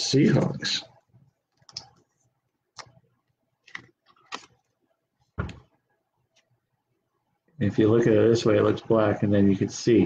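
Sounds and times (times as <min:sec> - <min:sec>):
trading cards clicking and rustling: 0:03.6 - 0:04.7.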